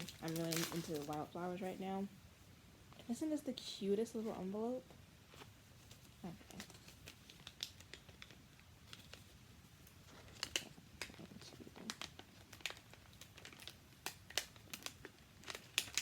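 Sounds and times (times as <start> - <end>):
packaging crinkling and rustling: 0.0 - 1.8, 5.3 - 16.0.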